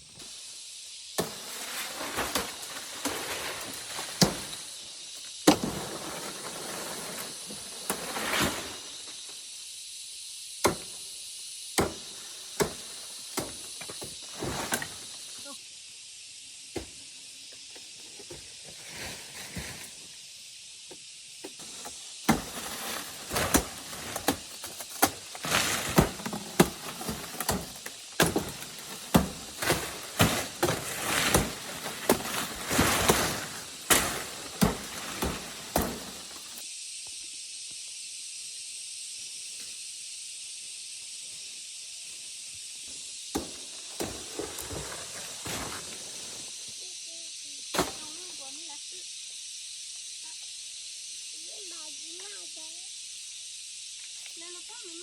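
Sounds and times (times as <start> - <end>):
steady high hiss: 0.0 - 55.0
dry palm leaves rustling: 1.2 - 9.4, 11.8 - 15.5, 18.6 - 20.0, 21.6 - 36.6, 43.6 - 46.7.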